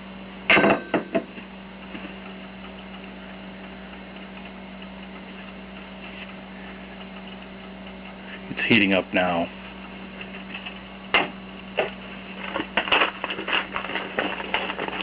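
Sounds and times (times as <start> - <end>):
espresso machine humming: 0.0 - 15.0
faint ticking: 1.7 - 12.0.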